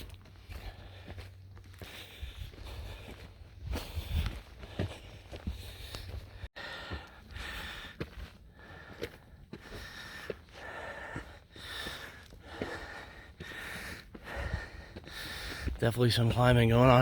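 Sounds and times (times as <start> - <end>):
footsteps on rocky trail: 0.0 - 17.0
person breathing hard: 0.4 - 15.8.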